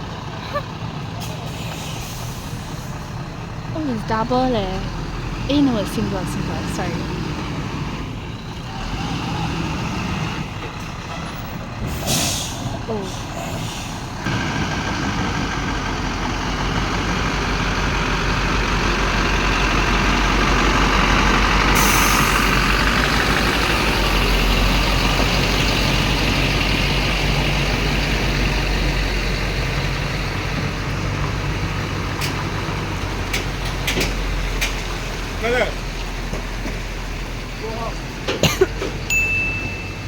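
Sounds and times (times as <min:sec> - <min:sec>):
truck diesel engine running: 0:00.0 - 0:40.0
air brake hiss: 0:01.5 - 0:02.9, 0:11.9 - 0:14.2, 0:21.8 - 0:22.5.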